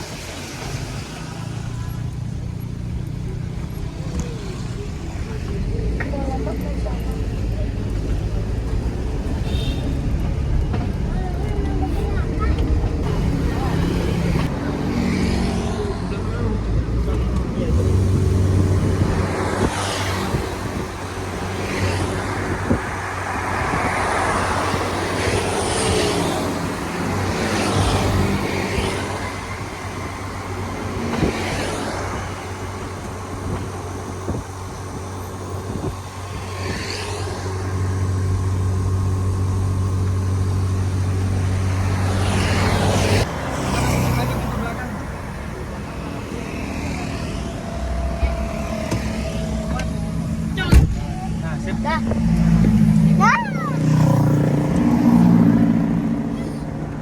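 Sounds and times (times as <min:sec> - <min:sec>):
car engine hum: 0:00.0 - 0:57.0
tyre and road noise: 0:00.0 - 0:57.0
vehicles passing: 0:00.0 - 0:57.0.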